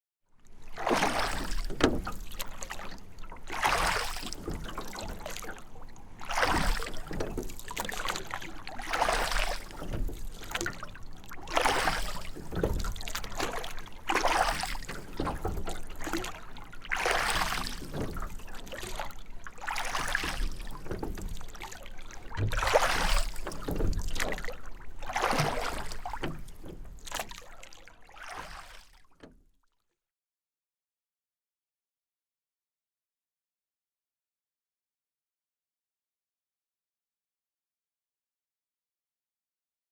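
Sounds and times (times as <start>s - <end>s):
oars splashing through water: 0.4s - 29.3s.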